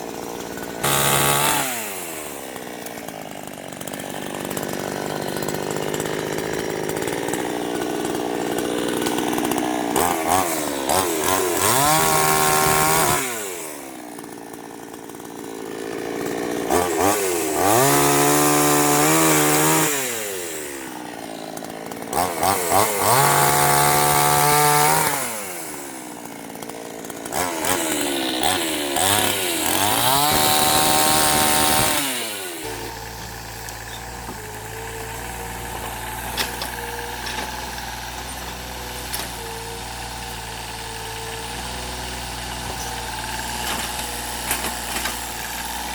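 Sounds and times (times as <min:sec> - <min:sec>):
chainsaw revving cutting wood: 0:00.0 - 0:45.9.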